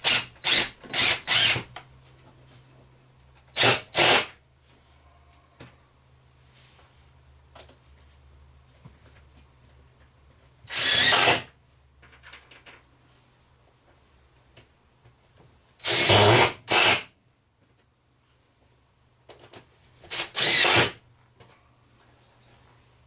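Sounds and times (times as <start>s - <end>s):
power drill driving screws into wood: 0.0s - 1.7s, 3.5s - 4.4s, 10.7s - 11.5s, 15.8s - 17.1s, 20.0s - 21.0s.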